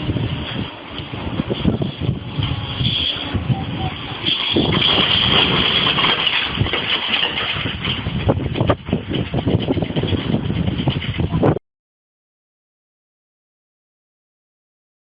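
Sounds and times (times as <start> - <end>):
engine running: 0.0 - 11.6
clattering knocks and rattles: 4.2 - 11.6.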